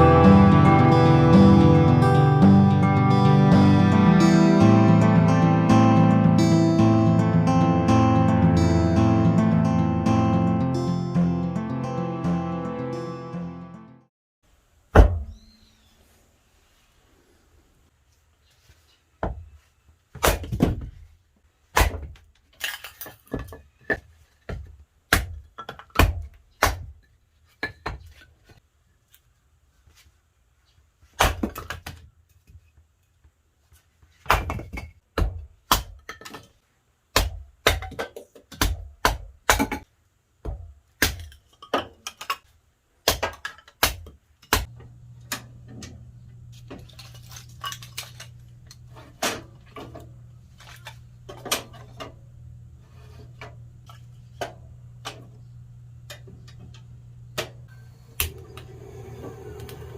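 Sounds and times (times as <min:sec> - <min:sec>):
low steady hum: 0:44.7 - 0:59.9.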